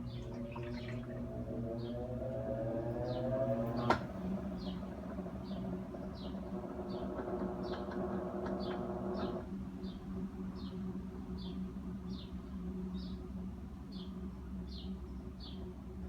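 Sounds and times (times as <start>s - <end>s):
washing machine motor hum: 0.0s - 12.0s
washing machine rising whine: 0.0s - 16.0s.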